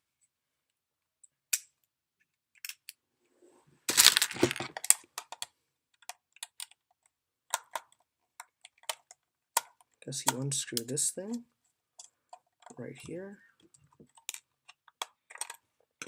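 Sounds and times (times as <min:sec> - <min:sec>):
screwdriver and plastic case clicking: 0:03.9 - 0:06.8.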